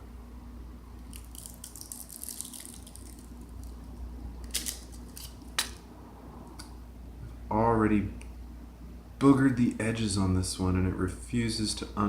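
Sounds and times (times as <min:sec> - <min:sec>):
low steady hum: 0:00.0 - 0:12.0
foil crinkling: 0:01.1 - 0:03.8, 0:04.4 - 0:05.7.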